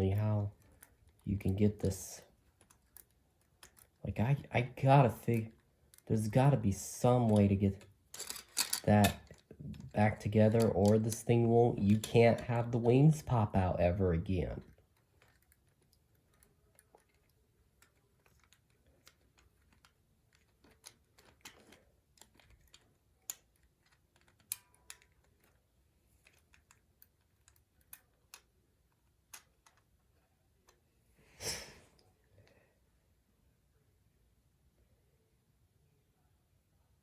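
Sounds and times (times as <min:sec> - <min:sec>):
plastic toy parts clicking: 0:02.5 - 0:04.0, 0:07.2 - 0:12.4, 0:14.6 - 0:30.0
plastic scrape or rattle: 0:08.2 - 0:09.4.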